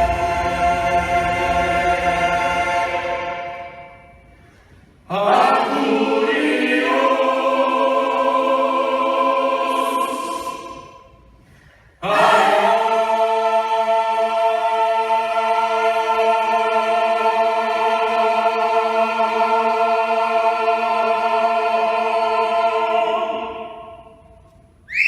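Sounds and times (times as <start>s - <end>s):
sustained choir-like chord: 0.0s - 4.3s, 5.1s - 11.1s, 12.0s - 24.3s.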